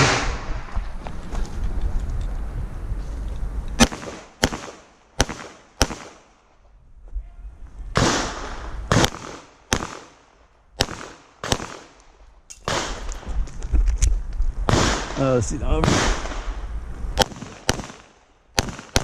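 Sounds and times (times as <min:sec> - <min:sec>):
pistol shots: 0:03.8 - 0:06.3, 0:08.0 - 0:10.2, 0:10.8 - 0:12.0, 0:12.6 - 0:13.2, 0:14.7 - 0:16.5, 0:17.2 - 0:19.0.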